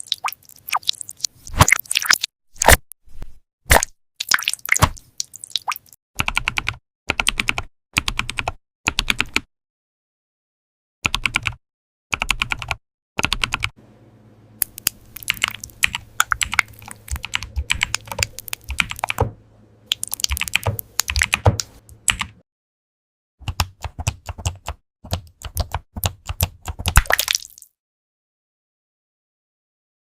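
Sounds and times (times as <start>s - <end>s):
computer keyboard typing: 6.2s - 9.5s, 11.1s - 11.6s, 12.2s - 13.7s, 14.6s - 19.3s, 19.9s - 22.4s, 23.4s - 27.1s.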